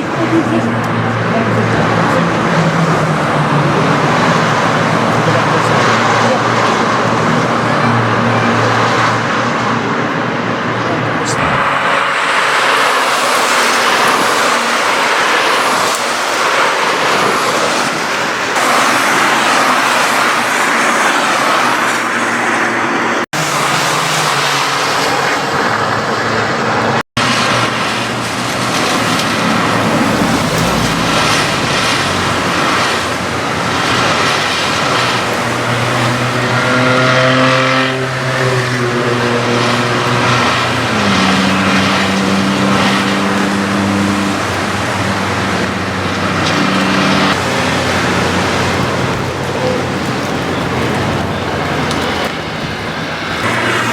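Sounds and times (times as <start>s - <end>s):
race car engines: 0.0s - 53.9s
tyre spray and rain hiss: 11.2s - 22.6s, 27.2s - 38.8s, 39.4s - 53.9s.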